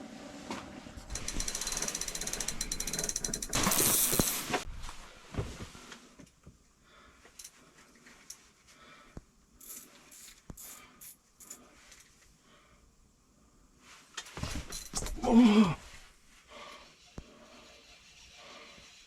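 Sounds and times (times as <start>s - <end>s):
faint rustles and ticks: 1.1s - 12.4s.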